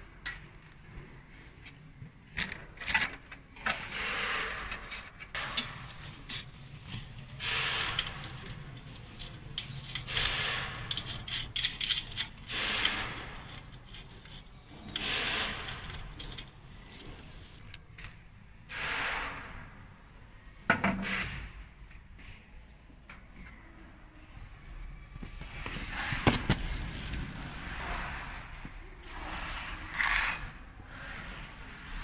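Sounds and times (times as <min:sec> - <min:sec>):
rough scraping strokes: 0:27.2 - 0:32.0.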